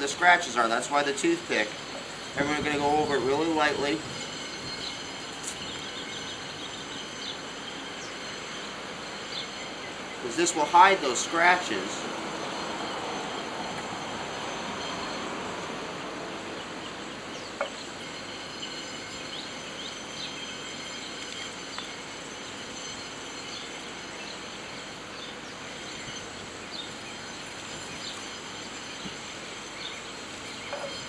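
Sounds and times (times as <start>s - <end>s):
steady background noise: 0.0s - 31.0s
faint high chirps and ticks: 17.4s - 23.7s.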